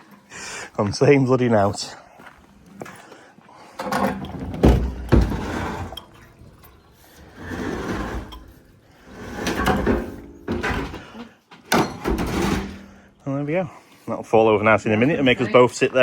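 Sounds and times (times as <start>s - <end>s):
scrap metal scraping and clattering: 3.7s - 13.2s
heavy thuds of scrap metal: 11.7s - 13.1s.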